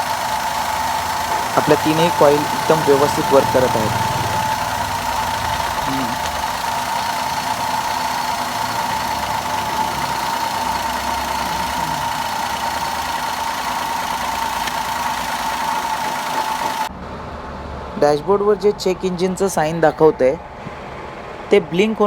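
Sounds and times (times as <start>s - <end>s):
high-pitched whine: 0.0s - 16.9s
car engine idling: 0.0s - 22.0s.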